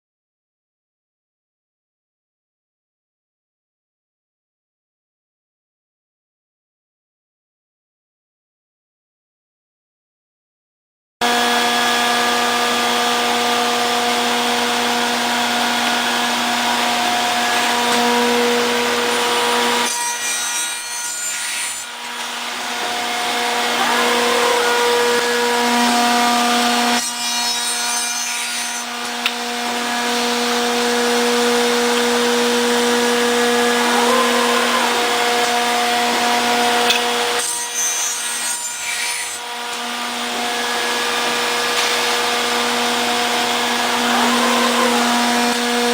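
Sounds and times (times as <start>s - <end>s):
woodworking machine spindle whine: 11.2s - 45.9s.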